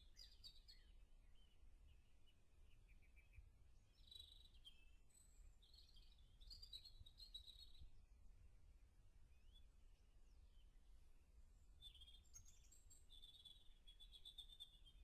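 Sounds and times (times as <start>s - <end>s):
faint songbird chirping: 0.0s - 15.0s.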